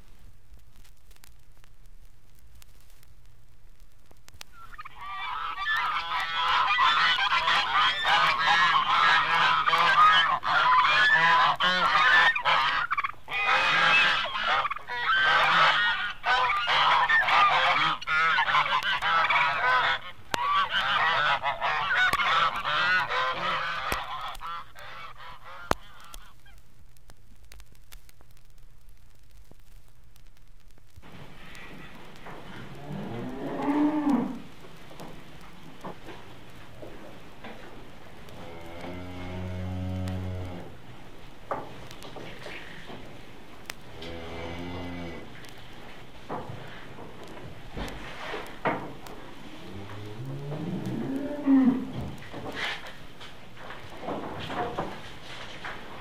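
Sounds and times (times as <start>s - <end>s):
record surface clicks: 0.0s - 5.0s, 25.6s - 35.7s
low hiss: 0.0s - 56.0s
geese honking: 4.5s - 26.6s.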